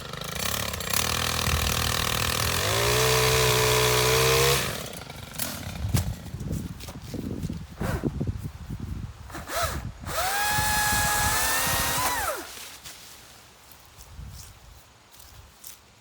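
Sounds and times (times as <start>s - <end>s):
chainsaw motor whining: 0.0s - 6.9s, 9.3s - 12.6s
handling knocks and rustling: 5.4s - 7.8s, 12.4s - 16.0s.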